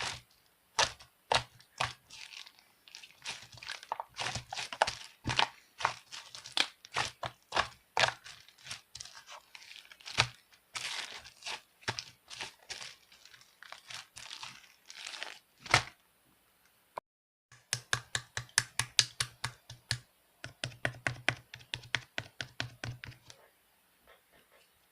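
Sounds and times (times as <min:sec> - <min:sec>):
crinkling rustles: 0:00.0 - 0:16.0
sharp clicks and taps: 0:17.5 - 0:23.4.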